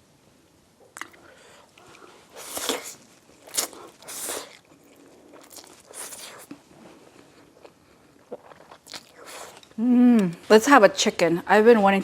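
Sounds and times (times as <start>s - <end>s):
biting and chewing: 1.8s - 9.8s.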